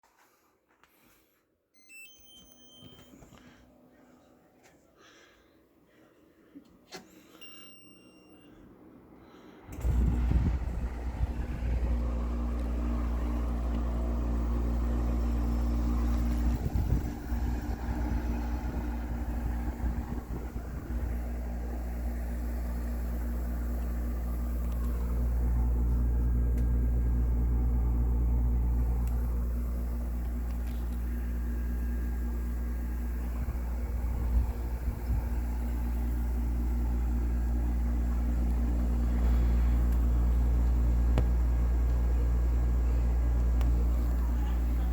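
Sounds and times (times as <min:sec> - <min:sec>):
window air conditioner humming: 0:01.8 - 0:44.9.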